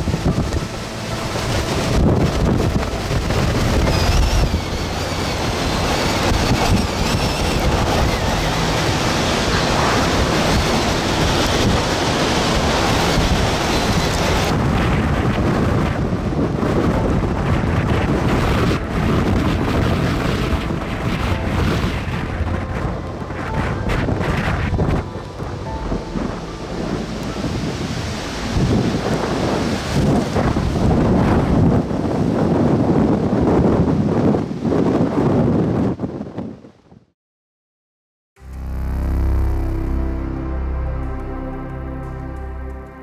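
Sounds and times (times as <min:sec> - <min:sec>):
strong wind buffeting microphone: 0:00.0 - 0:37.1.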